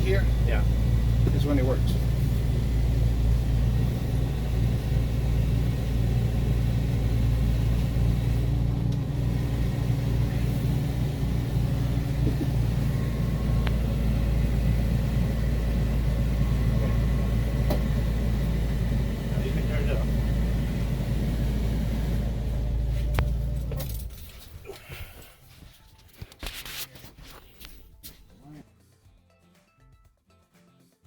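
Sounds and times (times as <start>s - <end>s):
engine idling low rumble: 0.0s - 25.0s.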